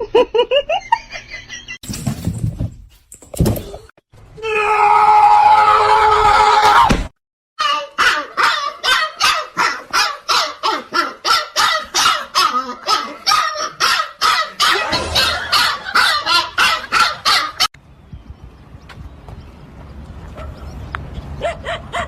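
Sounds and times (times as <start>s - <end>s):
dog barking: 8.0s - 17.7s, 21.4s - 22.0s.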